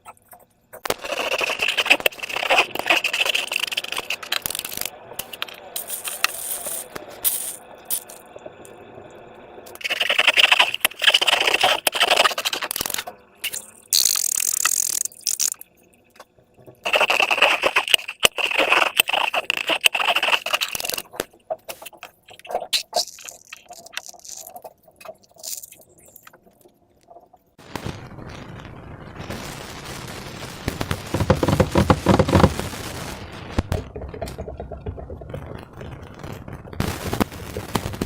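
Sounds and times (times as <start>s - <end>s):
slime crackling and scraping: 0.8s - 8.2s, 9.8s - 15.6s, 16.8s - 26.3s, 30.9s - 32.7s.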